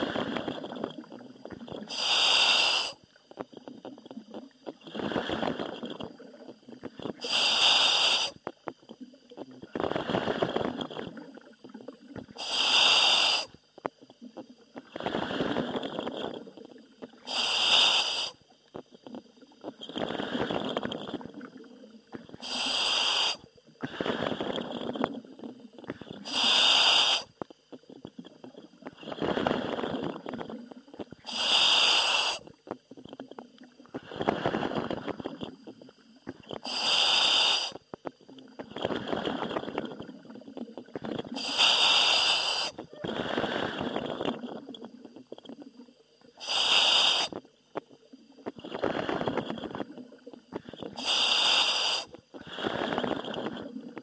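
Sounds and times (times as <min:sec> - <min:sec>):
exhaled air bubbling: 0:00.0 - 0:54.0
diver inhaling through demand valve: 0:01.9 - 0:03.0, 0:07.2 - 0:08.4, 0:12.4 - 0:13.6, 0:17.3 - 0:18.4, 0:22.4 - 0:24.6, 0:26.2 - 0:27.3, 0:31.3 - 0:32.4, 0:36.6 - 0:37.8, 0:41.4 - 0:44.2, 0:46.4 - 0:47.4, 0:50.6 - 0:53.3.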